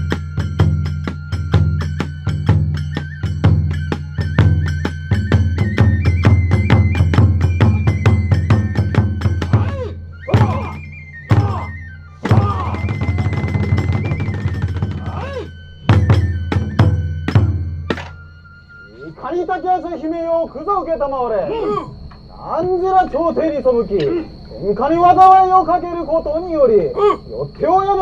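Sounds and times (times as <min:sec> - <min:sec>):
big drum beating: 0:00.0 - 0:18.1
flute melody: 0:00.0 - 0:20.7
hand cymbals clashing: 0:12.3 - 0:18.9.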